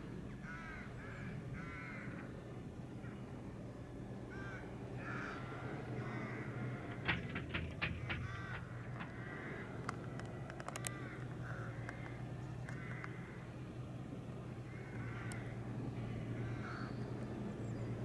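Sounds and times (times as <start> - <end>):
tractor engine humming: 0.0 - 18.0
birds calling with harsh cries: 0.3 - 3.4, 4.2 - 13.9, 14.6 - 18.0
sharp clicks: 9.8 - 11.3.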